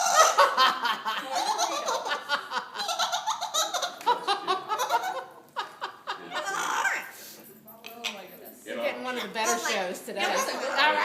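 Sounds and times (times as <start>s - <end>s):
parrot mimicking laughter: 0.0s - 4.1s, 4.7s - 5.4s, 6.2s - 7.2s.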